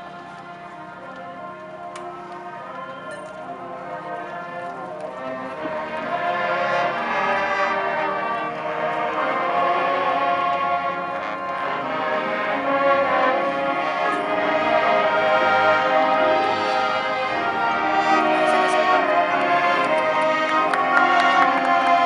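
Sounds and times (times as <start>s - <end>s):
orchestral music with brass: 0.0s - 22.0s.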